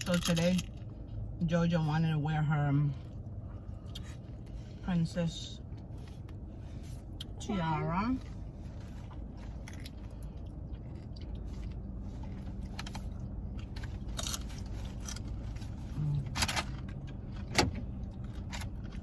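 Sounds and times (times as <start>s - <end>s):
steady low hum: 0.0s - 19.0s
chips crunching: 14.0s - 15.3s.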